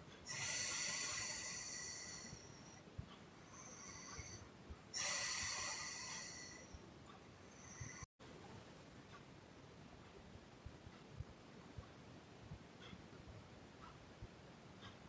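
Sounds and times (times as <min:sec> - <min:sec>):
quiet breathing: 0:00.0 - 0:08.6, 0:14.7 - 0:15.0.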